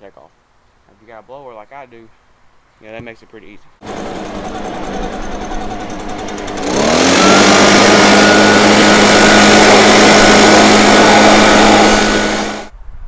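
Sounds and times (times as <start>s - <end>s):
leaf blower whining: 3.8s - 12.7s.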